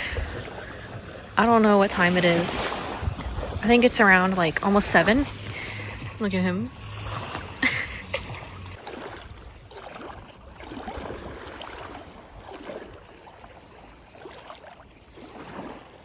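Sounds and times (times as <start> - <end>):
wet squelching footsteps: 2.7 - 13.2.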